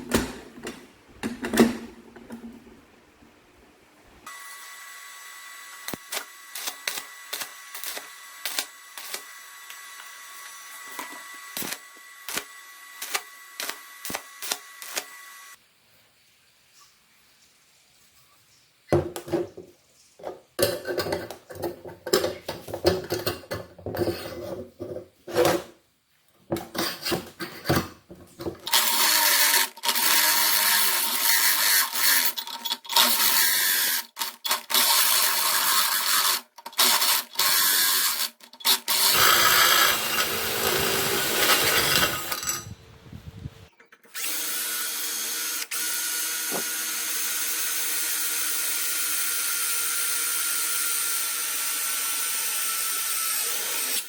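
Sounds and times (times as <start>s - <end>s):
electric drill running: 28.7s - 32.4s, 33.0s - 42.6s, 44.2s - 54.0s.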